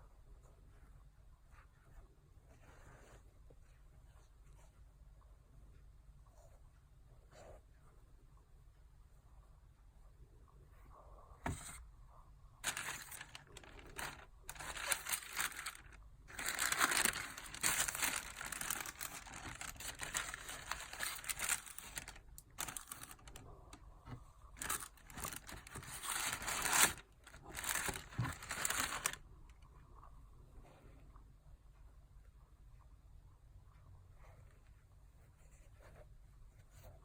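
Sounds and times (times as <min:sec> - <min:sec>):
packing paper crinkling: 0:12.6 - 0:23.8, 0:24.6 - 0:29.2.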